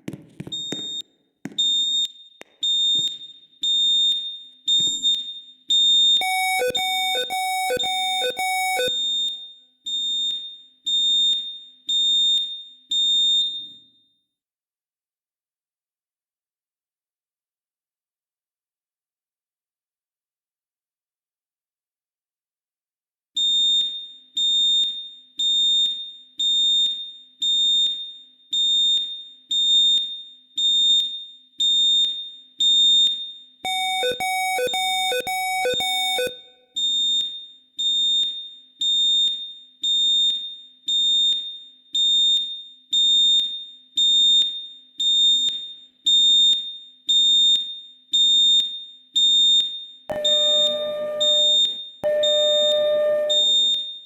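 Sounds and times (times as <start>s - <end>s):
fire alarm high-pitched beeps: 0.5s - 1.0s, 1.6s - 14.1s, 23.4s - 54.0s
lower alarm pulses: 6.2s - 9.1s, 33.7s - 36.6s, 50.1s - 53.8s
rough alarm tone: 6.2s - 9.2s, 33.7s - 36.6s, 50.1s - 53.8s.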